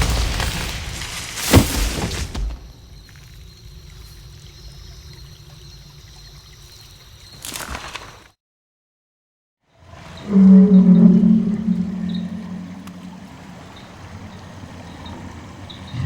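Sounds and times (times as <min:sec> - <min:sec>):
steady low hum: 0:10.8 - 0:16.0.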